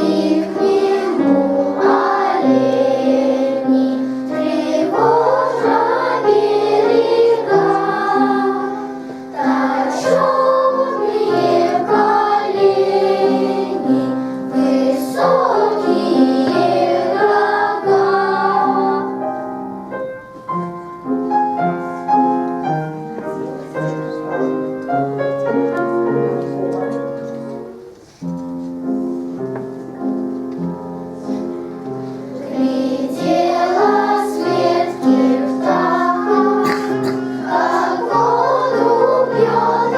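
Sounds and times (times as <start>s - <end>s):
children's choir singing: 0.0s - 19.7s, 31.0s - 39.9s
piano accompaniment: 0.0s - 39.9s.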